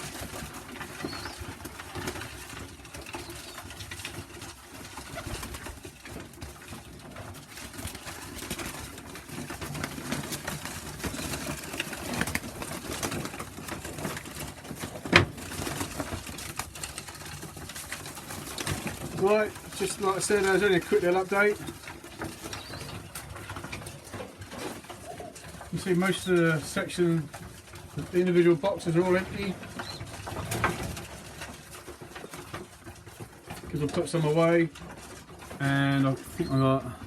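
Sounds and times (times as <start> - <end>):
pigeons cooing: 0.0 - 37.0.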